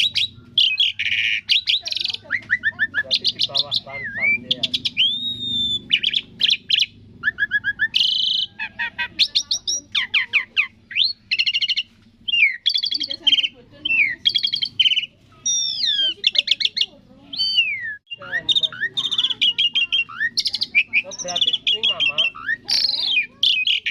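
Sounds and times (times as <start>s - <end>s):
starling singing: 0.0s - 23.9s.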